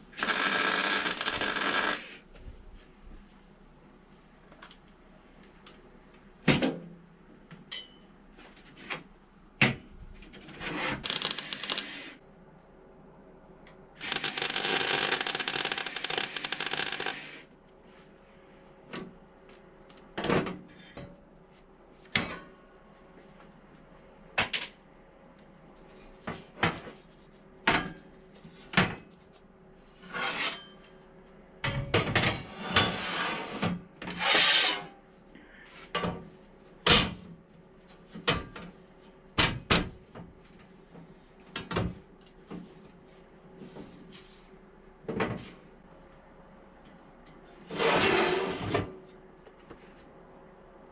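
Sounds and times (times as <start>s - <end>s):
loud harsh noise: 0.0s - 2.2s.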